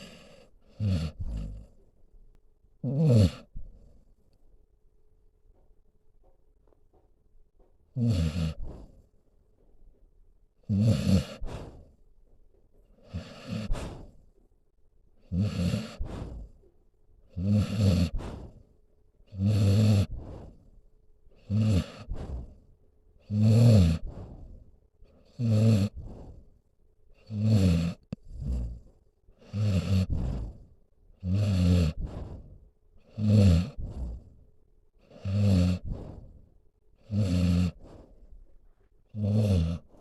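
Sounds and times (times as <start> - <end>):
dog snoring: 0.0 - 1.8, 2.8 - 4.0, 7.9 - 9.0, 10.6 - 12.0, 12.8 - 14.5, 15.2 - 16.7, 17.3 - 26.5, 27.1 - 40.0.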